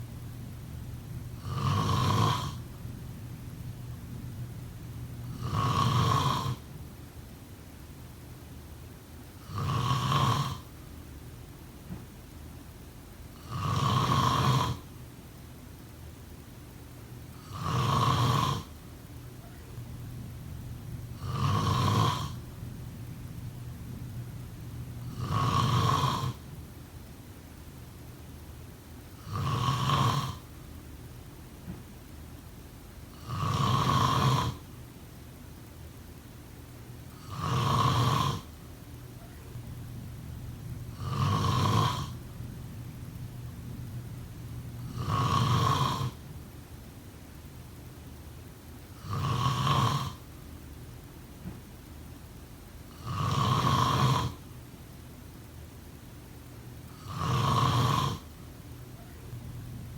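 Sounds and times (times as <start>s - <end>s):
person snoring: 1.3s - 2.8s, 5.2s - 6.7s, 9.4s - 10.7s, 13.4s - 14.9s, 17.4s - 18.7s, 21.0s - 22.7s, 24.5s - 26.4s, 29.2s - 30.5s, 33.1s - 34.6s, 37.2s - 38.5s, 39.5s - 46.2s, 49.0s - 50.2s, 52.9s - 54.4s, 56.9s - 58.3s.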